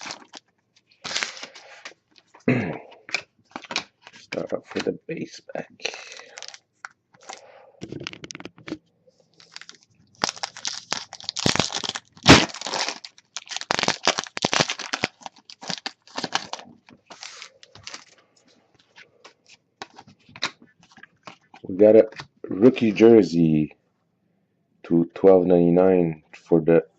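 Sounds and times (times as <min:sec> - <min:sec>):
wrapper tearing and crinkling: 0:00.0 - 0:01.8, 0:06.0 - 0:06.6, 0:09.4 - 0:18.2.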